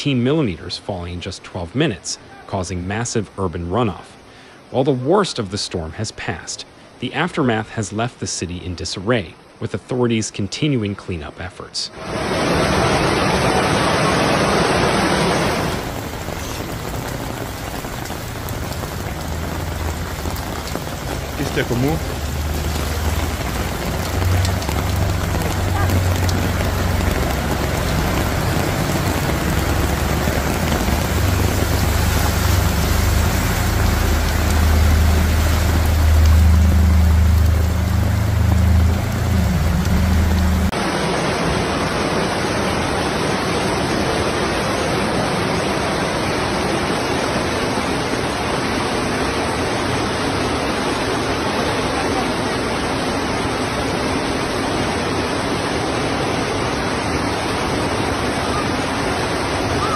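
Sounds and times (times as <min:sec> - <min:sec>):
heavy rain: 0:00.0 - 0:59.9
rushing floodwater: 0:00.0 - 0:59.9
low rumble: 0:16.0 - 0:40.8.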